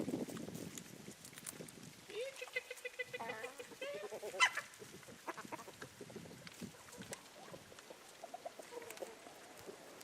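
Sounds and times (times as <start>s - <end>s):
chickens clucking: 2.2s - 10.0s.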